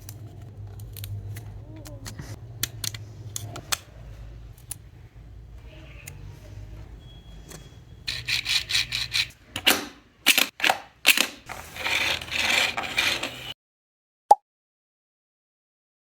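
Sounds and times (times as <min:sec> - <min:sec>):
plastic parts scraping: 0:07.4 - 0:13.6.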